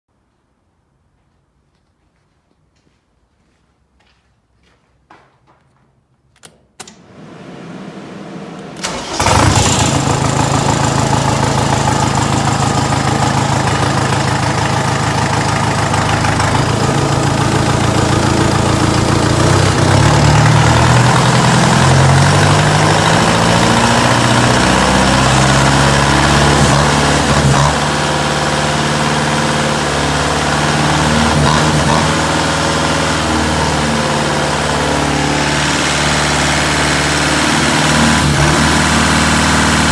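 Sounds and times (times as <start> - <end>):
diesel engine cranking and running: 8.6 - 39.9.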